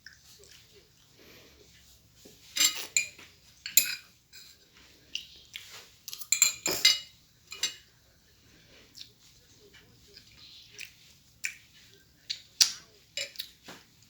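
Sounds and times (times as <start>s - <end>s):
cutlery clinking on a plate: 2.4s - 4.6s, 5.6s - 7.9s, 13.2s - 13.9s.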